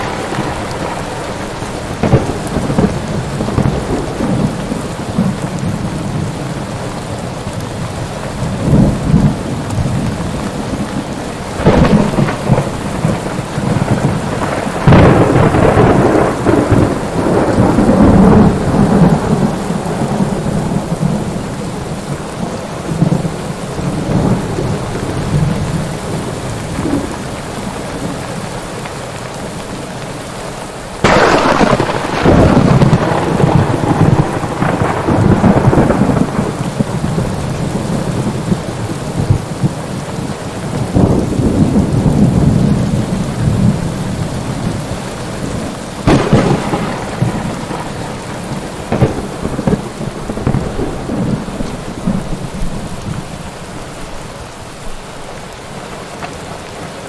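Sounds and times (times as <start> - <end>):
loud thunderclap: 0.0 - 5.9, 8.6 - 21.3, 31.0 - 39.8, 40.7 - 53.3
thunder rumbling: 0.0 - 28.5, 31.0 - 55.5
heavy rain: 0.0 - 57.0.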